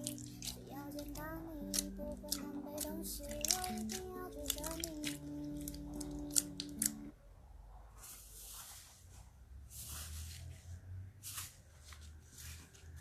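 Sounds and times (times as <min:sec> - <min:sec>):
slime squishing: 0:00.0 - 0:07.1
low hum: 0:00.0 - 0:07.7.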